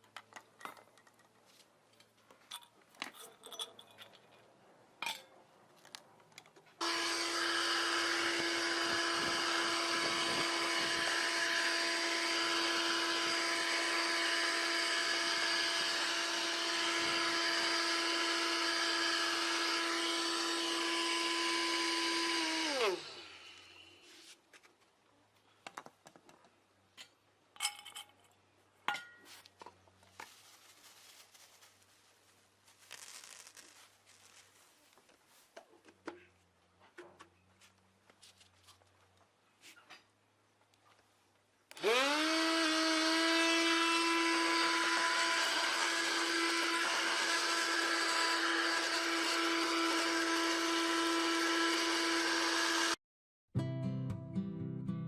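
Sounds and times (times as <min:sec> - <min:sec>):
motor spinning down: 0:06.8 - 0:23.7, 0:41.8 - 0:49.8
vacuum motor whining: 0:06.8 - 0:23.8, 0:41.7 - 0:53.0.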